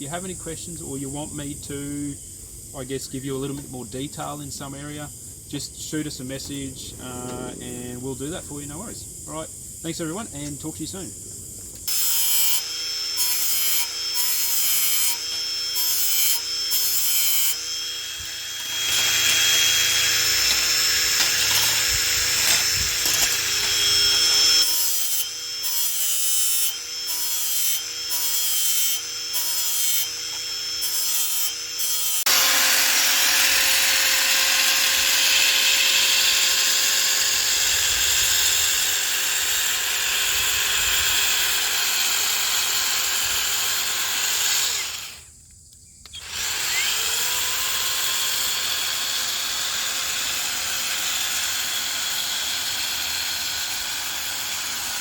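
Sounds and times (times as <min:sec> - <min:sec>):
angle grinder grinding steel: 0:11.9 - 0:45.3, 0:46.1 - 0:55.0.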